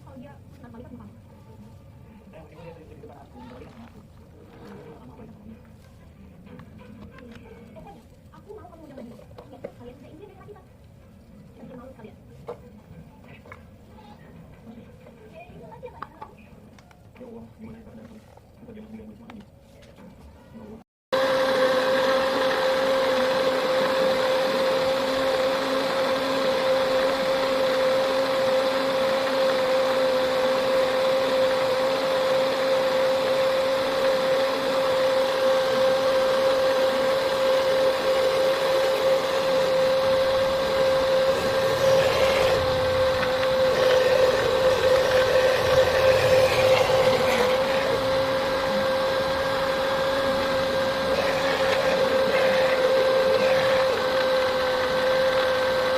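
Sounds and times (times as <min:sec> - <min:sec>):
electric blender motor whine: 0:21.1 - 0:55.9.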